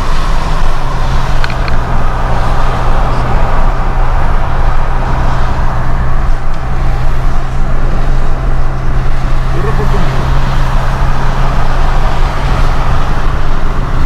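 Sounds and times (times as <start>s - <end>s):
car engine hum: 0.0s - 14.0s
tyres hissing on wet road: 0.0s - 14.0s.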